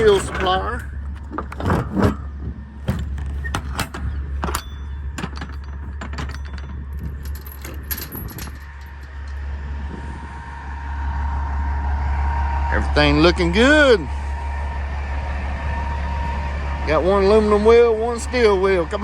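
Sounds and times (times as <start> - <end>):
diesel engine idling: 0.0 - 1.6, 2.2 - 19.0
sharp metallic clicks and knocks: 0.0 - 9.5.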